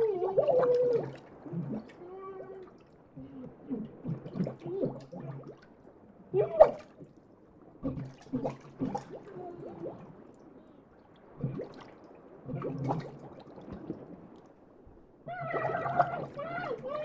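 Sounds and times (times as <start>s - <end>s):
splashing and gurgling water: 0.0s - 10.4s, 11.0s - 17.0s
strained voiced cry: 15.3s - 17.0s.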